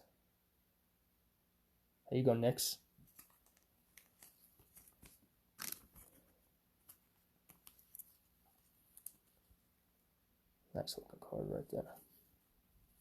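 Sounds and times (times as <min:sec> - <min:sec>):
trading cards clicking and rustling: 0:03.0 - 0:08.2.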